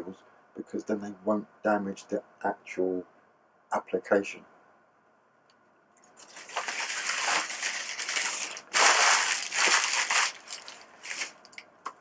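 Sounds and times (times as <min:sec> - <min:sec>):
wrapping crinkling: 0:06.0 - 0:11.6.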